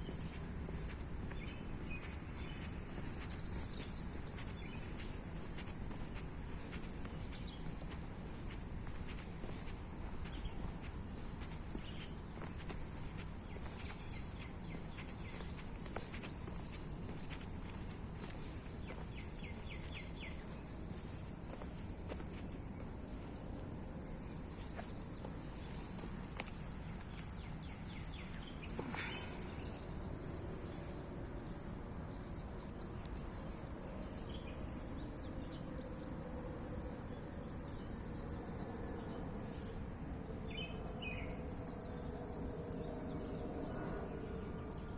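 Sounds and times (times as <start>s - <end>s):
low outdoor rumble: 0.0s - 32.8s
faint chirps: 24.0s - 30.6s.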